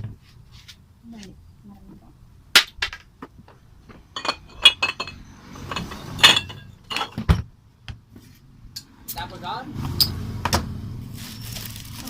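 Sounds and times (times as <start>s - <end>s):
glass bottles clinking: 4.1s - 7.5s
scraping rustle: 11.0s - 12.0s.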